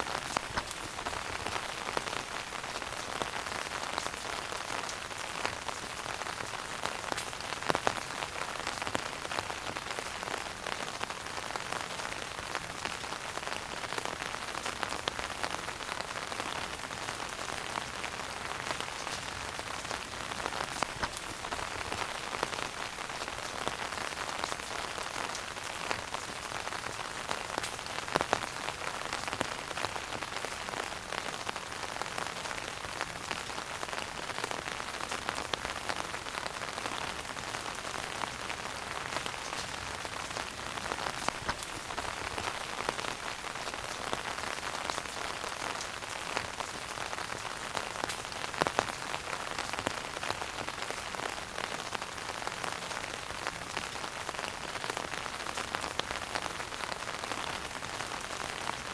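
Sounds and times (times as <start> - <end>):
wood fire crackling: 0.0 - 8.0, 16.8 - 30.3, 38.2 - 46.2
fire popping: 0.1 - 2.2, 18.4 - 22.7, 40.6 - 42.8.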